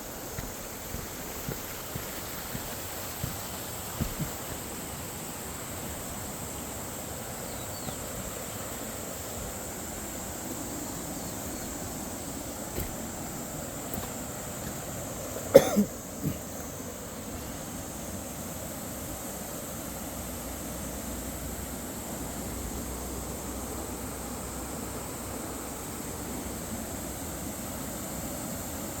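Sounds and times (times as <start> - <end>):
mountain stream rushing: 0.0 - 29.0.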